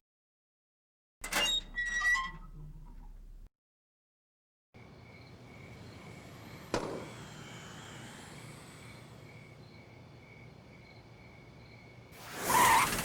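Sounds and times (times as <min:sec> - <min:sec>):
faint pulsing high chirp: 0:04.8 - 0:12.2
background ambience: 0:04.8 - 0:13.0.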